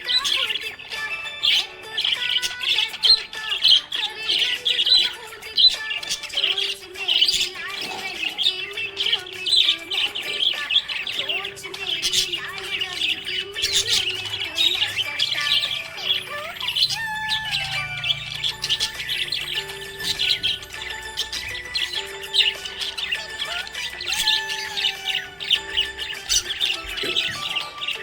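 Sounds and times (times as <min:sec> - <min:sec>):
budgerigars chirping and warbling: 0:00.0 - 0:28.0.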